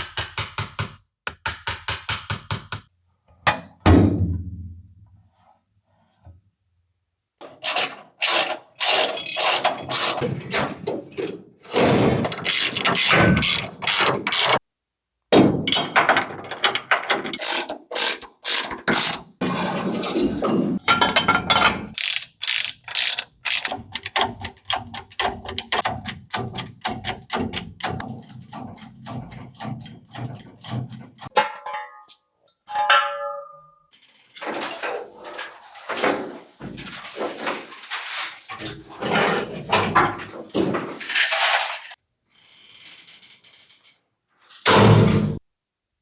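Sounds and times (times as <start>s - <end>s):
rapid mechanical clicks: 7.6s - 10.2s, 12.4s - 14.6s, 17.4s - 19.2s, 22.0s - 28.0s.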